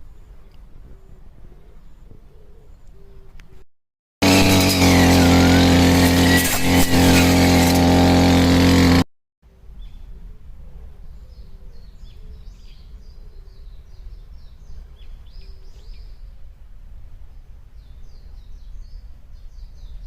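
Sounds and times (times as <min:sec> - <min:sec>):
brush cutter engine running: 0:04.2 - 0:09.1.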